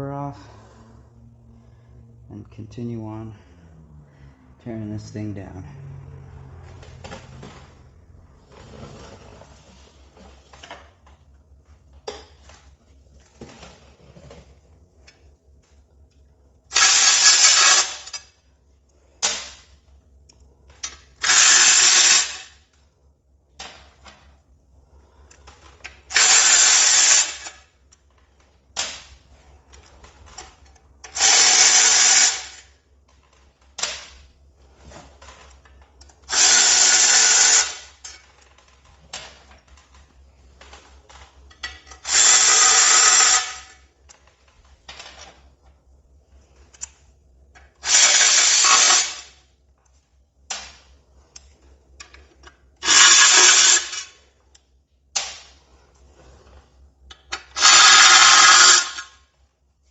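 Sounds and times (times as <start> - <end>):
power drill spinning fasteners: 16.7 - 18.3, 20.8 - 22.6, 26.0 - 27.7, 31.0 - 32.8, 36.2 - 38.6, 41.6 - 43.8, 47.8 - 49.4, 52.8 - 54.2, 57.3 - 59.2.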